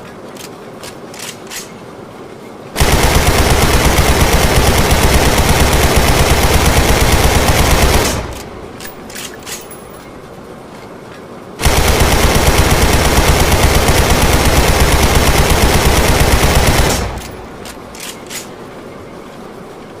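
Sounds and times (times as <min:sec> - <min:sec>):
rifle firing full auto: 0:02.8 - 0:08.5, 0:11.6 - 0:17.4.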